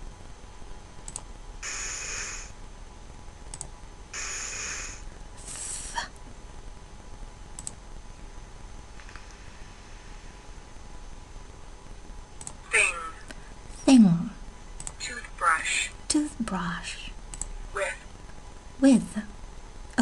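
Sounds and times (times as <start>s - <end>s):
computer mouse clicks: 1.0s - 2.2s, 3.5s - 4.8s, 7.5s - 7.8s, 12.4s - 12.6s, 14.8s - 15.0s, 17.3s - 17.5s
short hissing sounds: 1.6s - 2.6s, 4.1s - 6.0s.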